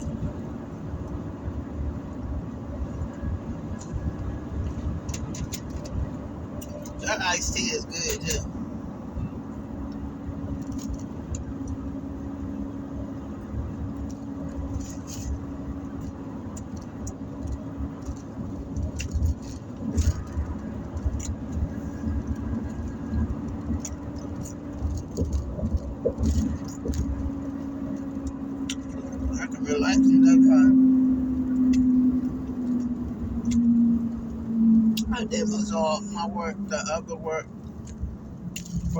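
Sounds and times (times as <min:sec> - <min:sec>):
car engine and road rumble: 0:00.0 - 0:38.9.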